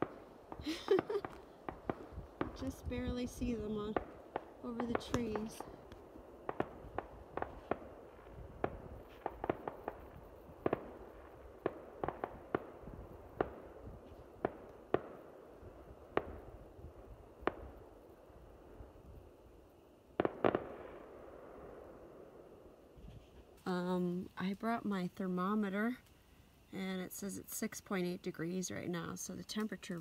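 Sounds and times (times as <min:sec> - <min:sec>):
distant fireworks bangs: 0:00.0 - 0:19.0, 0:20.2 - 0:23.5.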